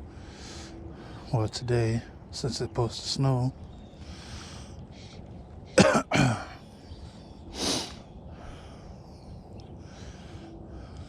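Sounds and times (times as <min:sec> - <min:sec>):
man making throat sounds: 0:05.8 - 0:06.5.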